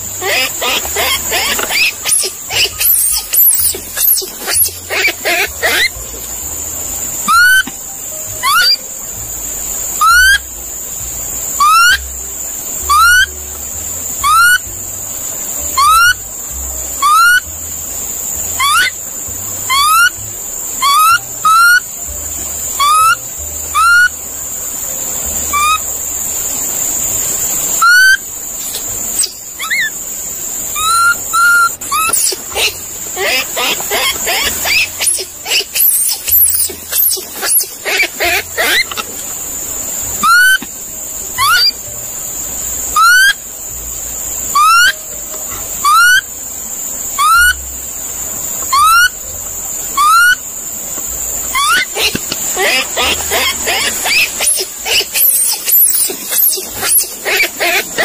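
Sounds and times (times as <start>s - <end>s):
monkey calls rising in pitch: 0.1s - 6.0s, 7.3s - 7.7s, 8.4s - 8.8s, 10.0s - 10.4s, 11.6s - 12.0s, 12.9s - 13.3s, 14.2s - 14.6s, 15.8s - 16.2s, 17.0s - 17.4s, 18.6s - 19.0s, 19.7s - 20.2s, 20.8s - 21.8s, 22.8s - 24.1s, 25.5s - 25.8s, 27.8s - 28.2s, 29.2s - 30.0s, 30.8s - 39.1s, 40.2s - 40.6s, 41.4s - 41.8s, 43.0s - 43.4s, 44.5s - 45.0s, 45.8s - 46.3s, 47.2s - 47.6s, 48.7s - 49.2s, 50.0s - 50.4s, 51.5s - 58.0s.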